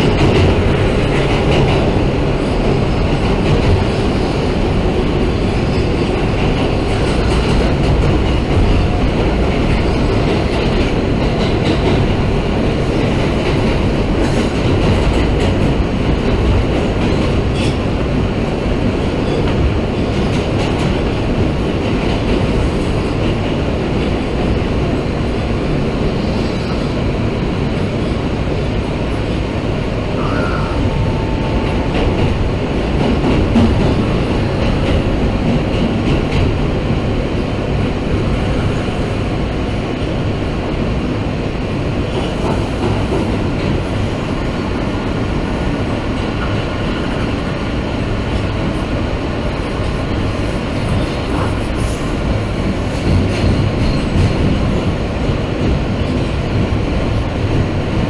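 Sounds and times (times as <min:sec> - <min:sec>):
subway train rumble and rattle: 0:00.0 - 0:58.0.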